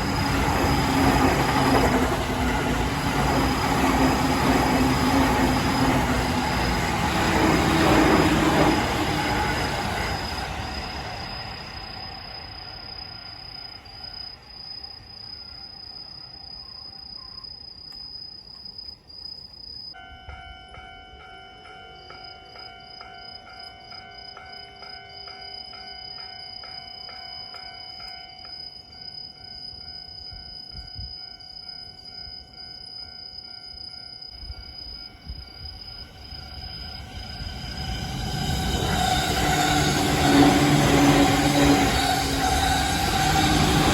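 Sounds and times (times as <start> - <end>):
train low rumble: 0.0 - 15.3, 33.4 - 43.9
night insects trilling: 0.0 - 20.0, 22.2 - 43.9.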